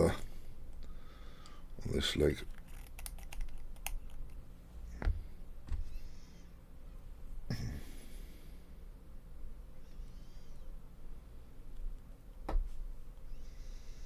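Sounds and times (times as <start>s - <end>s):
plastic parts clicking: 2.4s - 4.4s.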